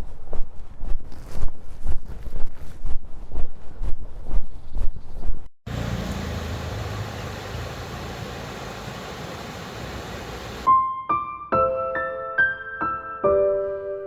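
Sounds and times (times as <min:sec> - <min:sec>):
steady rushing noise: 0:05.7 - 0:10.7
piano music: 0:10.7 - 0:14.0.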